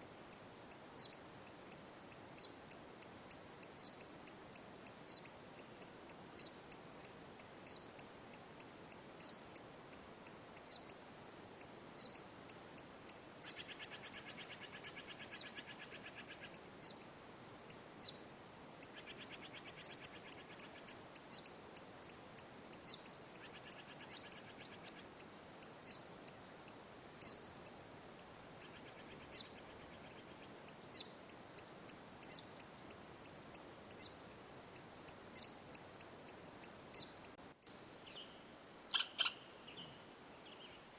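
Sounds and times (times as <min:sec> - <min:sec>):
small animal chip calls: 0:00.0 - 0:11.0, 0:11.6 - 0:17.1, 0:17.7 - 0:37.8, 0:38.9 - 0:39.5.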